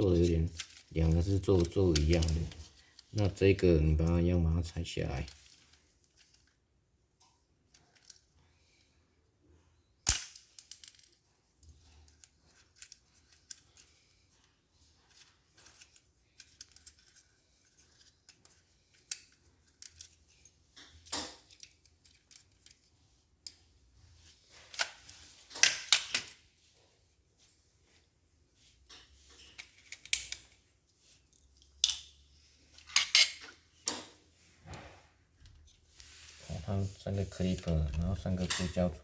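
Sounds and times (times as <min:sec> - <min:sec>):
tool and parts handling: 0:00.0 - 0:04.2, 0:07.7 - 0:08.8, 0:10.0 - 0:26.5, 0:28.8 - 0:36.5, 0:37.1 - 0:39.0.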